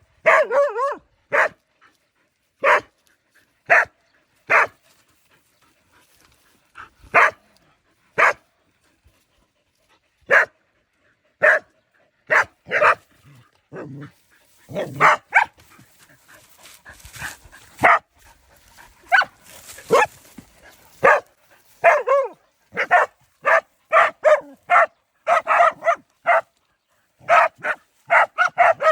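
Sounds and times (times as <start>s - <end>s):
dogs barking: 0.2s - 1.6s, 2.6s - 2.9s, 3.7s - 4.8s, 7.1s - 7.4s, 8.2s - 8.4s, 10.3s - 10.6s, 11.4s - 13.1s, 13.7s - 15.8s, 17.1s - 18.1s, 19.0s - 20.3s, 20.9s - 26.5s, 27.2s - 28.9s.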